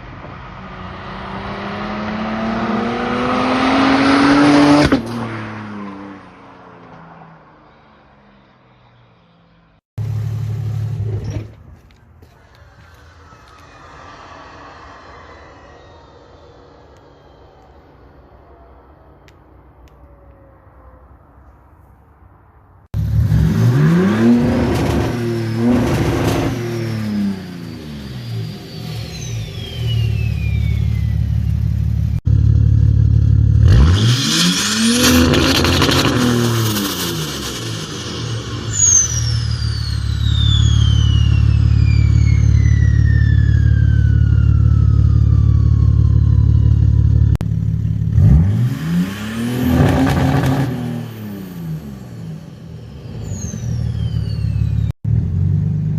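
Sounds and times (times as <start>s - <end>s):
diesel engine revving: 23.0s - 55.9s
turbo whistle: 27.7s - 31.8s, 36.8s - 45.8s.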